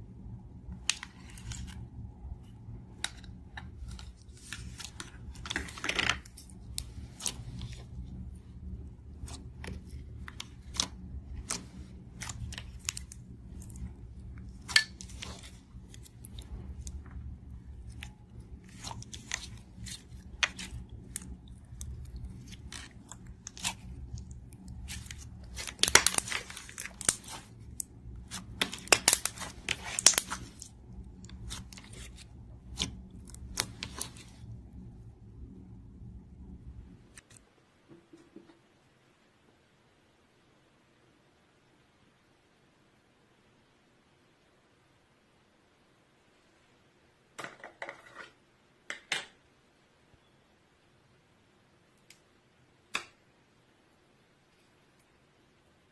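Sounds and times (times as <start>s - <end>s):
slime crackling: 0.7s - 34.7s.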